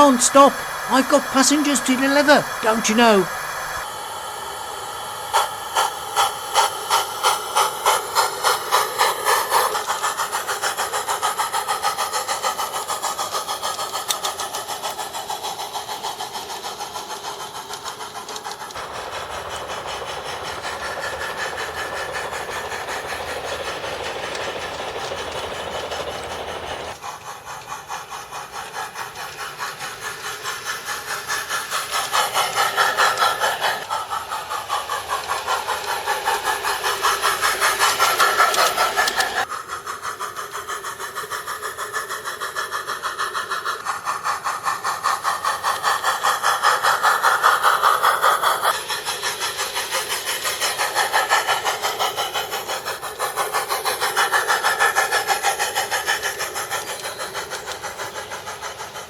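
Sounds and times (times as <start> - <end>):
model steam locomotive chuffing: 0.0 - 59.0
steam hiss: 0.0 - 59.0.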